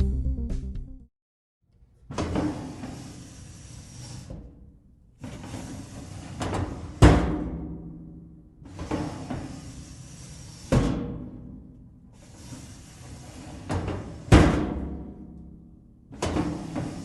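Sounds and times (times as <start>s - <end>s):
metal sliding: 2.1s - 7.9s, 8.6s - 11.6s, 12.2s - 15.3s, 16.2s - 17.0s
loud metal clunk: 6.6s - 8.2s.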